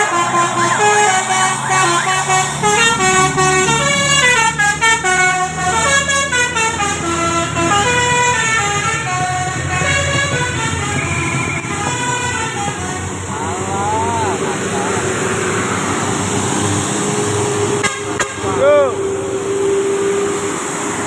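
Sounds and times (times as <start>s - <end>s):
musical bus horn tune: 0.0s - 13.3s, 17.5s - 18.6s.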